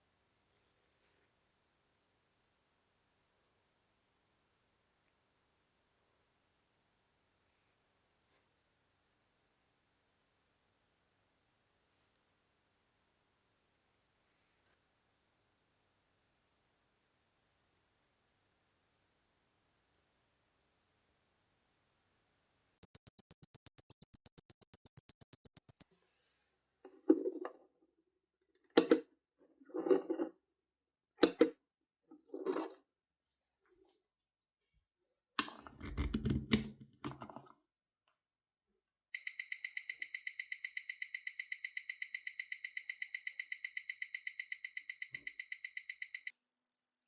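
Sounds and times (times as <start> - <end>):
watch ticking rapidly: 22.8 - 25.8, 39.2 - 47.0
watch winding ratchet clicks: 22.8 - 25.8, 39.2 - 47.0.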